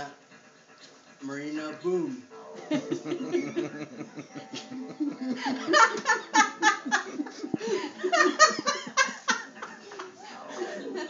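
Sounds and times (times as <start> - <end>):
people laughing: 2.6 - 11.0.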